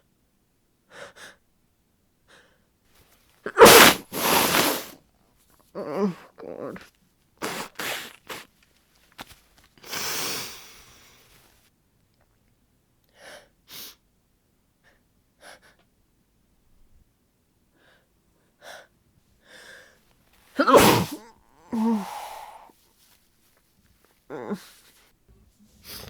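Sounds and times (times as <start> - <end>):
woman sneezing: 3.5 - 5.0, 20.6 - 22.7
voiced exhale: 3.6 - 4.9, 20.6 - 22.7
woman gasping breaths: 20.6 - 22.7.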